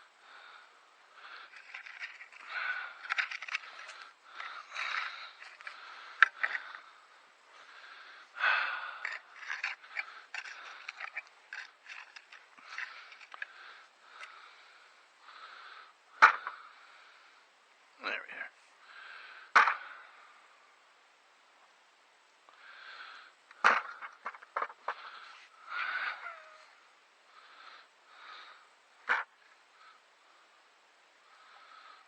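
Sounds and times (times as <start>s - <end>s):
digging in soil: 1.2s - 6.9s, 7.5s - 14.5s.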